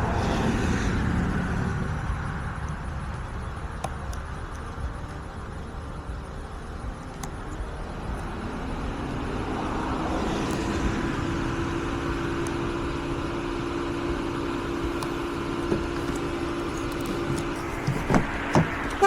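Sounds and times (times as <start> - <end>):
key-cutting machine motor running: 6.8 - 19.0.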